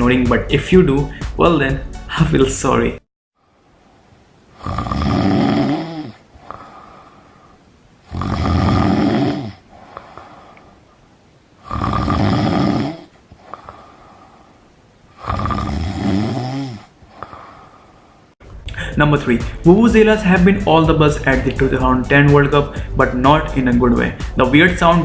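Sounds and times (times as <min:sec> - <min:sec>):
person snoring loudly: 0:04.6 - 0:07.1, 0:08.1 - 0:10.3, 0:11.6 - 0:13.9, 0:15.2 - 0:17.8
faint breathing: 0:06.1 - 0:07.8, 0:09.5 - 0:10.9, 0:13.3 - 0:14.8, 0:16.5 - 0:19.6, 0:22.7 - 0:23.0.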